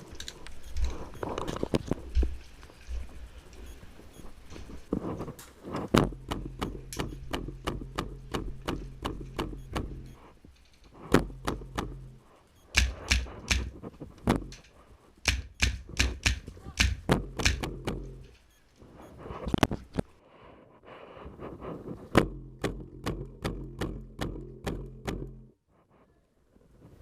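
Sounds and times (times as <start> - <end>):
airsoft rifle rapid shots: 12.7 - 13.8.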